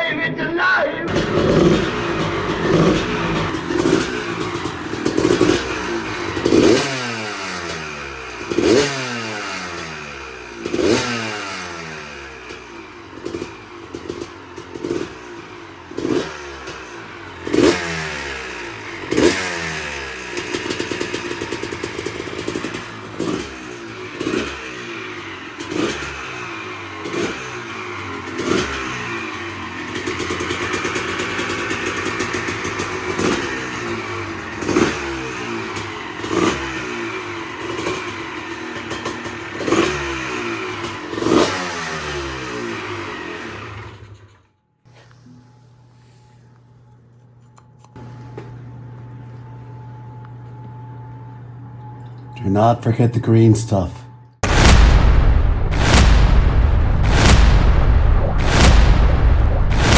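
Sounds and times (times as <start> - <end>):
dirt-bike engine revving: 1.1 - 43.8.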